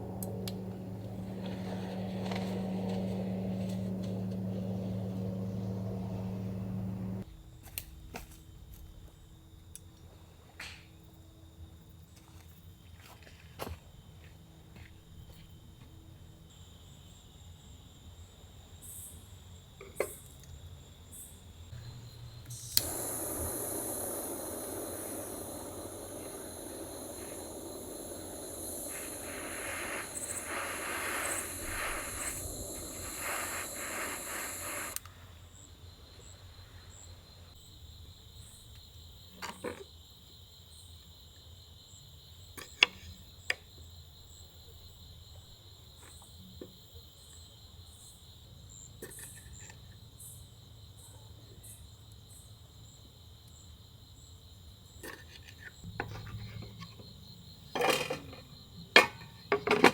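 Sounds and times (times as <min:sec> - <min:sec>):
crickets and insects chirring: 0:00.0 - 0:07.2, 0:21.1 - 0:35.0, 0:55.7 - 0:59.9
loud even hiss: 0:00.0 - 0:07.2, 0:21.8 - 0:35.0.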